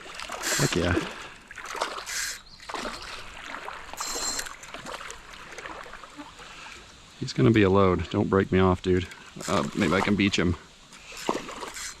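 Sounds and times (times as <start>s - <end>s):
creek water trickling: 0.0s - 12.0s
water splashing: 0.0s - 12.0s.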